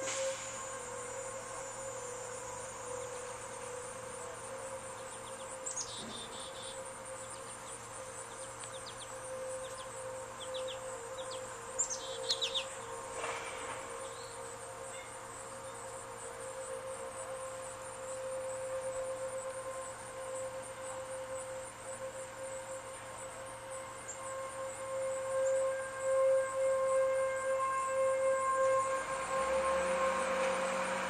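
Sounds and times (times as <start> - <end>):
steady warning siren: 0.0 - 31.0
birds chirping: 8.7 - 12.9.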